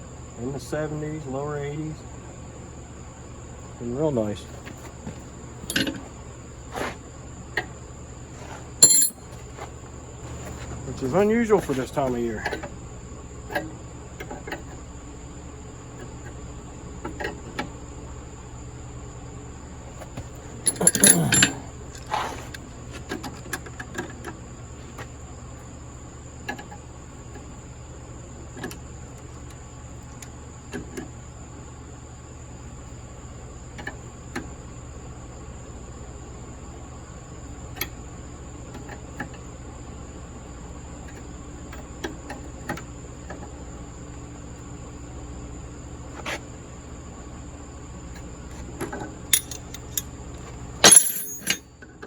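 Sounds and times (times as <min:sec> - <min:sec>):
metal tools clinking: 0:05.7 - 0:06.1, 0:08.8 - 0:09.2, 0:20.6 - 0:22.5, 0:49.4 - 0:50.1, 0:50.8 - 0:51.6.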